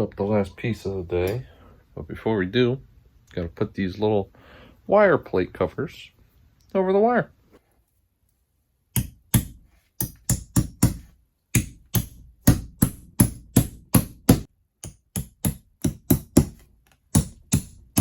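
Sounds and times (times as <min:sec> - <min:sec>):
hammer striking metal plates: 0:09.0 - 0:16.6, 0:17.2 - 0:18.0.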